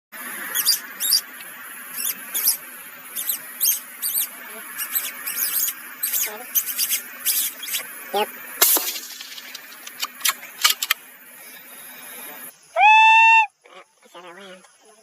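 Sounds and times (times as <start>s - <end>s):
animal chirps and squeaks: 0.5s - 1.3s, 1.9s - 8.3s, 9.2s - 11.0s.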